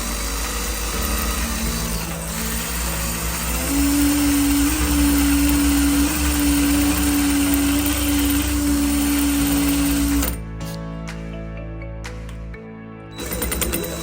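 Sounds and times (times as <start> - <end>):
small electric motor humming: 0.0 - 10.4.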